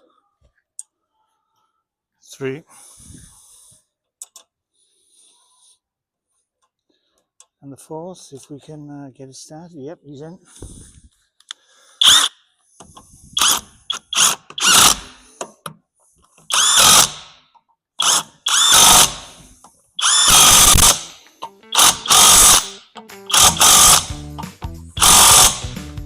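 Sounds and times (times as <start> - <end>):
power tool motor bursts: 12.0 - 12.4, 13.4 - 15.3, 16.5 - 17.4, 18.0 - 24.2, 25.0 - 25.8.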